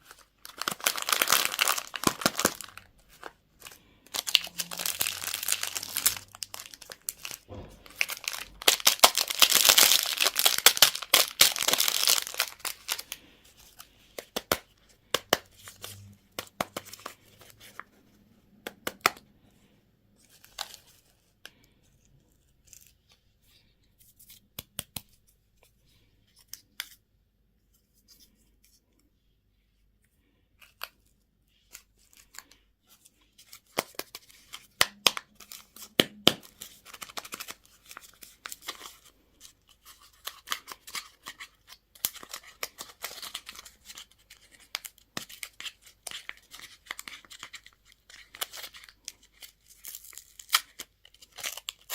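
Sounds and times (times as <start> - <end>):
packaging crinkling and tearing: 0.0 - 17.8, 33.4 - 51.9.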